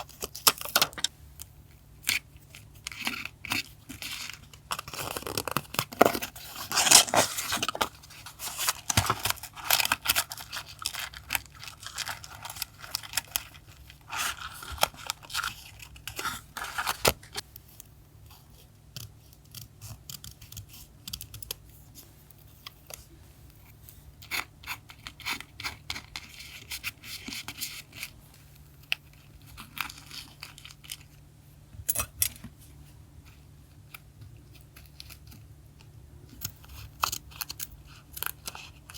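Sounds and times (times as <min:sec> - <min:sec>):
paper rustling and tearing: 0:03.7 - 0:17.4.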